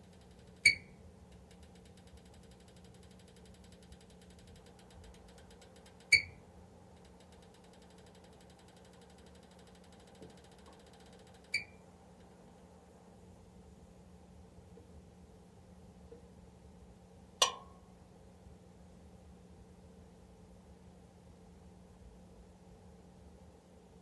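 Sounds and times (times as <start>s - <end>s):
sharp metallic ticks from heater: 0.0s - 12.7s, 17.4s - 17.9s
faint steady hum: 0.0s - 24.0s.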